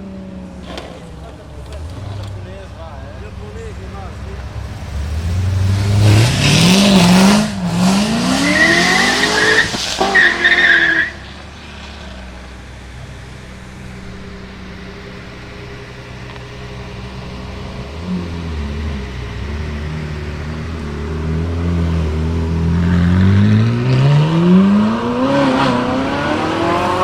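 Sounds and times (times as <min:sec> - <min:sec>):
car engine revving: 0:00.0 - 0:27.0
tyre squeal: 0:00.6 - 0:02.5, 0:08.4 - 0:11.2.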